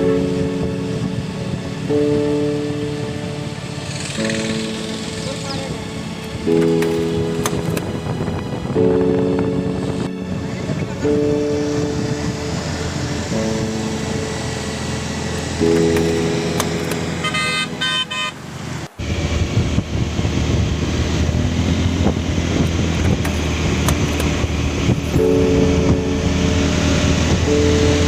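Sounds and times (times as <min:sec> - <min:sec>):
engine and wind rumble: 0:00.0 - 0:28.0
road traffic: 0:00.0 - 0:28.0
vehicle horn honking: 0:17.1 - 0:18.5.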